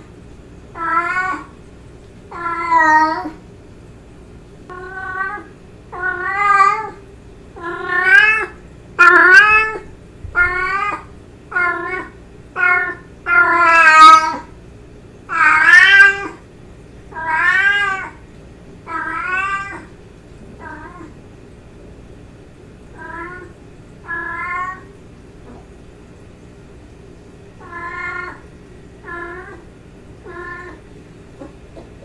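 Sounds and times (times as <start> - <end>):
cat meowing: 0.8 - 1.6, 2.3 - 3.4, 4.7 - 7.0, 7.6 - 14.5, 15.3 - 16.4, 17.1 - 18.2, 18.9 - 19.9, 20.6 - 21.1, 22.9 - 24.9, 27.6 - 31.9.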